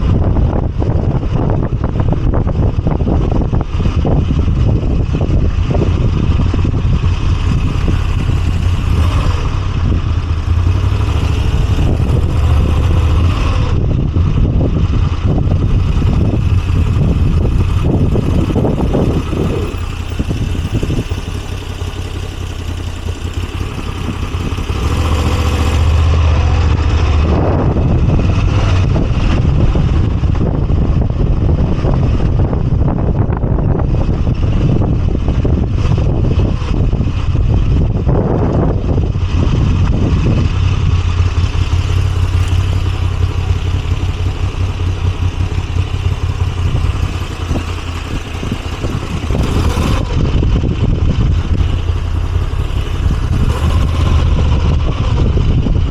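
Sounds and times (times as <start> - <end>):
motorcycle engine running: 0.0 - 55.9.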